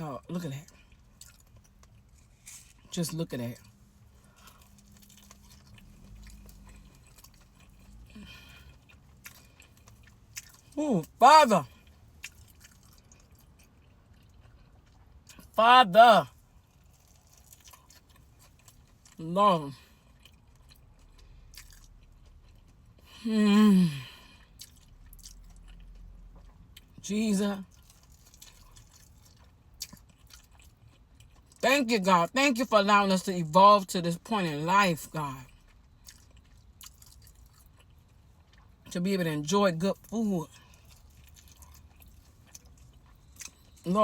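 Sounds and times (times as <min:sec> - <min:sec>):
low steady hum: 0:00.0 - 0:44.0
faint chewing: 0:00.6 - 0:03.0, 0:03.6 - 0:10.8, 0:11.7 - 0:15.5, 0:16.6 - 0:19.2, 0:19.8 - 0:23.2, 0:24.0 - 0:27.0, 0:27.6 - 0:31.6, 0:35.5 - 0:38.9, 0:40.0 - 0:43.9
woman moaning: 0:23.2 - 0:24.2.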